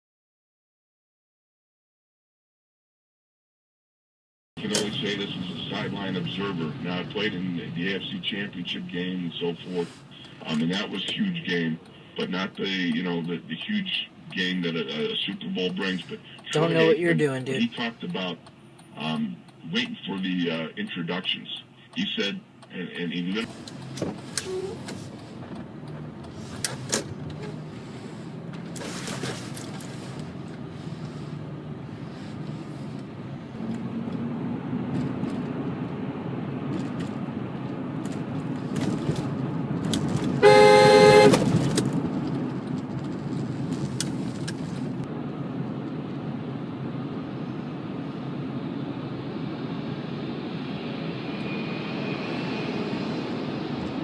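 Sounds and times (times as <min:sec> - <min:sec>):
car road and engine noise: 0:04.6 - 0:54.0
car horn blast: 0:40.4 - 0:41.5.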